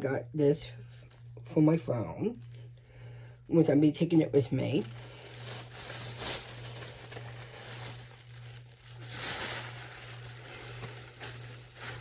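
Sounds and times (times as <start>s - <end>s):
low steady hum: 0.0s - 12.0s
packaging crinkling and rustling: 4.5s - 12.0s.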